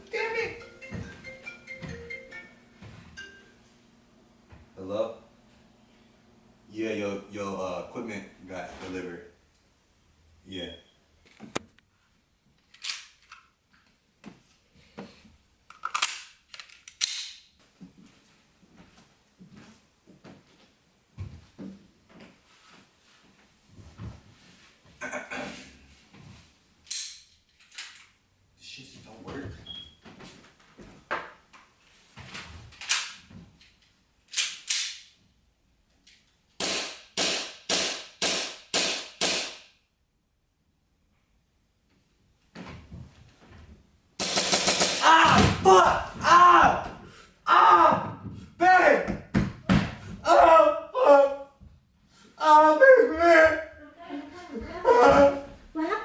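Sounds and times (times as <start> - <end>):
airsoft gun snaps and clicks: 15.7 - 17.4, 34.3 - 35.1
airsoft gun shots: 36.6 - 39.6, 44.2 - 45.1.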